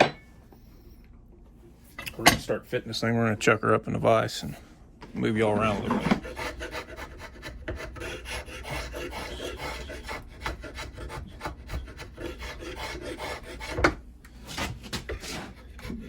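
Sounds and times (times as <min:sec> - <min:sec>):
hand tool scraping wood: 0:05.4 - 0:16.0.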